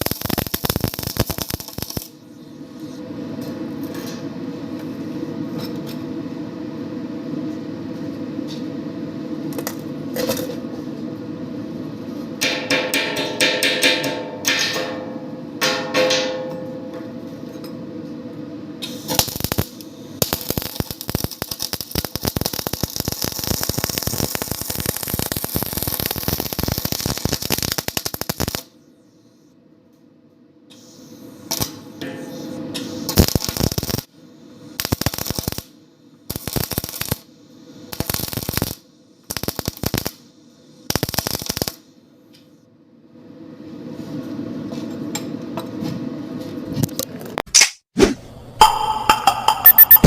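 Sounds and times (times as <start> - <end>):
arc welding crackle: 0.0 - 2.2, 18.8 - 28.7, 31.4 - 31.9, 33.0 - 34.1, 34.7 - 40.2, 40.8 - 41.8.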